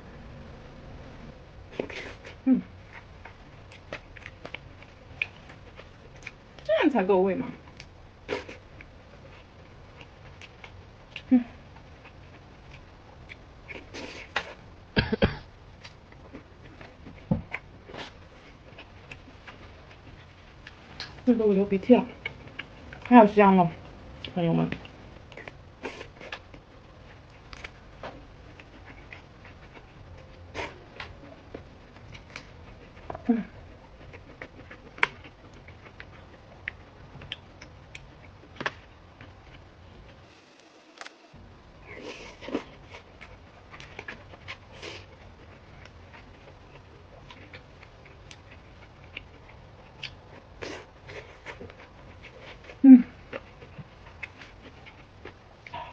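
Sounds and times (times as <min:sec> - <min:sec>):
person coughing: 0:15.0 - 0:15.4.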